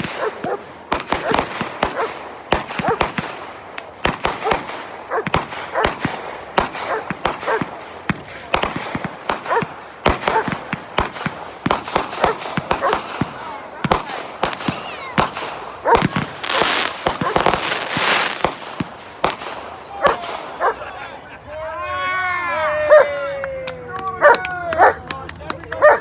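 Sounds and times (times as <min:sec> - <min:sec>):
fireworks bangs and pops: 0:00.0 - 0:20.8.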